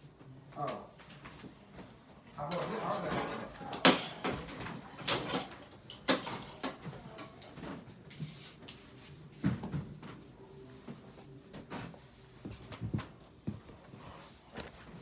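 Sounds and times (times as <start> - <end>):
knocks of household things: 3.8 - 6.9.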